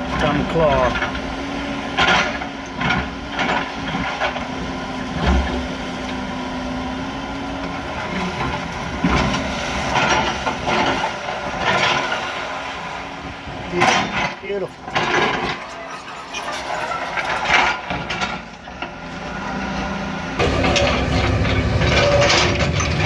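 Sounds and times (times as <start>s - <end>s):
excavator diesel engine running: 0.0s - 23.0s
bucket clanking and scraping: 13.6s - 19.2s, 20.4s - 23.0s.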